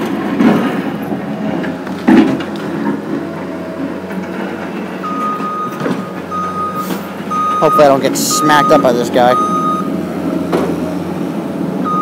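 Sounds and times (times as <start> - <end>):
heavy truck engine running: 0.0 - 12.0
truck reversing alarm beeping: 5.0 - 10.1, 11.8 - 12.0.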